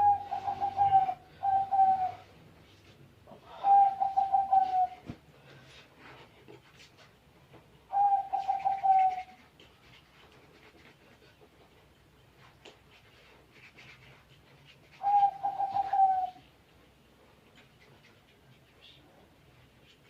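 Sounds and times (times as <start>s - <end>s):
dove cooing: 0.0s - 2.4s, 3.4s - 5.1s, 7.9s - 9.5s, 14.9s - 16.5s.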